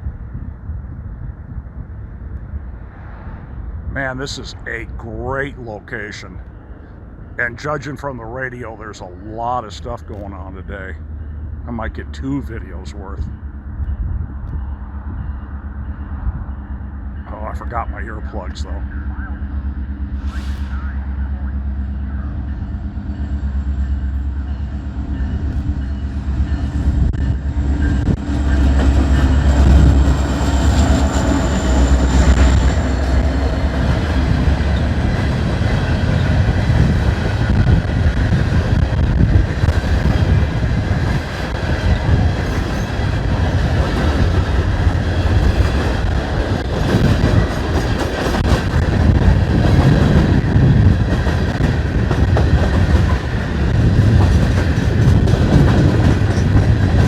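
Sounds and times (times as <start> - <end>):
train wheels clickety-clack: 27.8 - 57.0.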